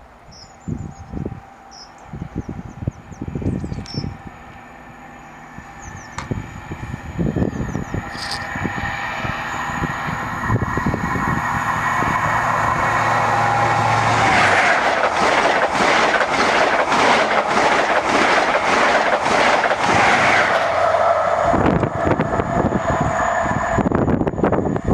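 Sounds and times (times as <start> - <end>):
diesel engine hum: 0.0 - 15.2
train wheels over track: 0.8 - 24.9.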